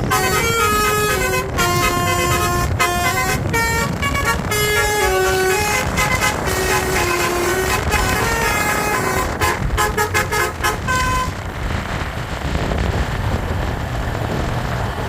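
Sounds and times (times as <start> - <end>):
multi-tone bus horn melody: 0.0 - 11.5
bus engine rumble: 0.0 - 15.0
road traffic rumble: 0.0 - 15.0.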